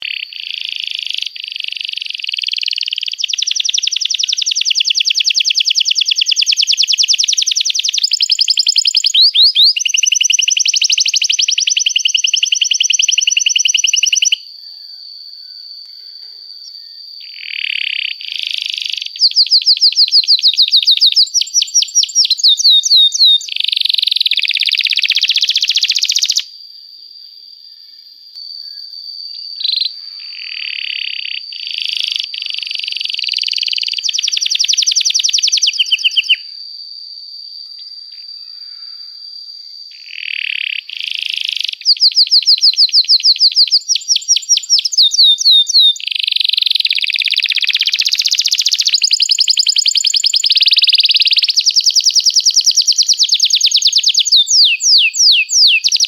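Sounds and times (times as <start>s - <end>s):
canary singing trills: 0.0s - 15.0s, 16.5s - 26.5s, 29.4s - 36.5s, 39.9s - 56.0s
faint steady high tone: 11.6s - 18.0s, 26.4s - 30.5s.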